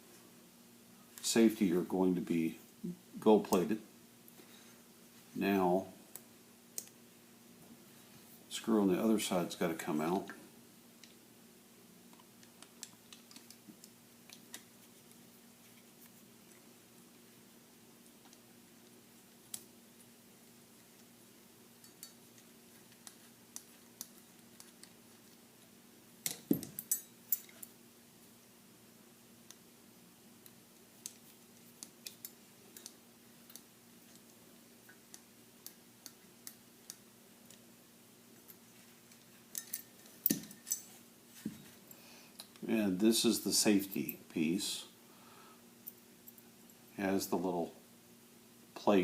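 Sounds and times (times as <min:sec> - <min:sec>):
faint steady hum: 0:00.0 - 0:49.0
tiny faint clicks: 0:06.1 - 0:07.0, 0:30.4 - 0:37.6
metal clicks of pistol parts: 0:39.5 - 0:40.9.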